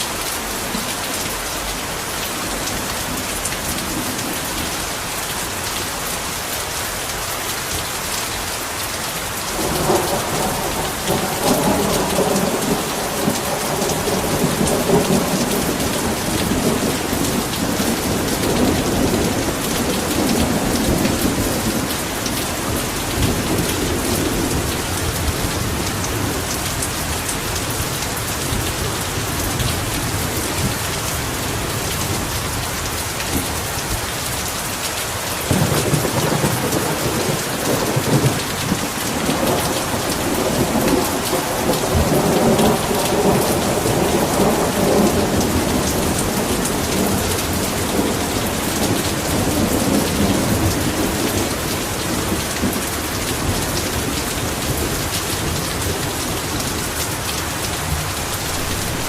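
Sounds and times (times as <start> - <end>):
heavy rain: 0.0 - 59.0
thunder rumbling: 9.5 - 26.8, 35.4 - 56.9, 57.7 - 59.0.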